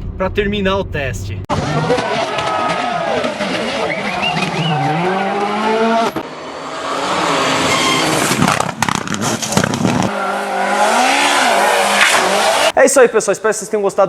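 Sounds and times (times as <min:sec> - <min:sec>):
car engine accelerating hard: 0:01.5 - 0:12.7.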